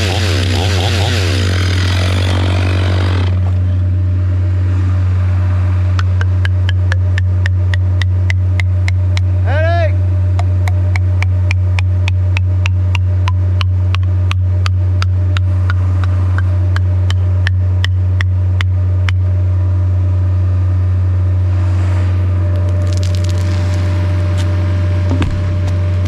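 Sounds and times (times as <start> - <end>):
heavy equipment engine humming: 0.0 - 26.0
rapid regular ticking: 6.0 - 9.4, 10.4 - 19.2
rush of crackling noise: 22.5 - 26.0.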